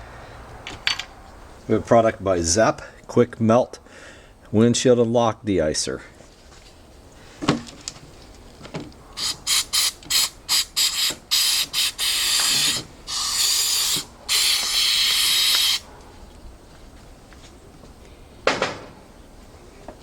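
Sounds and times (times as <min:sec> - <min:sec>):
aerosol can spraying: 0:09.2 - 0:15.8.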